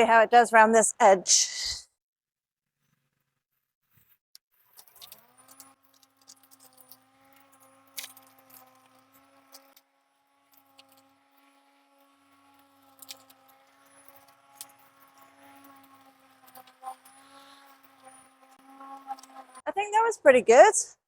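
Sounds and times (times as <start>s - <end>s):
electric lawnmower humming: 4.6s - 20.1s
sharp clicks from cutting grass: 4.8s - 19.6s.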